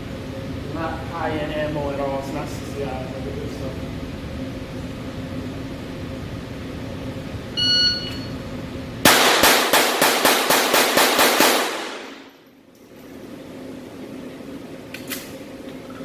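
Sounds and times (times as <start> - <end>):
short electronic beep: 7.6 - 8.4
rapid pistol shots: 9.1 - 12.3.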